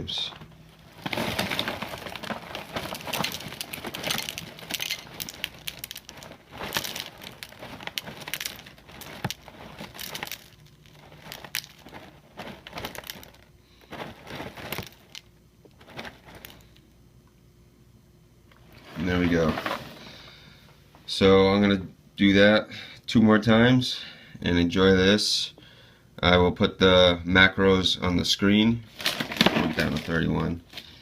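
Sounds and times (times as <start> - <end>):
cereal crackling into a bowl: 0.0 - 16.8, 28.9 - 31.0.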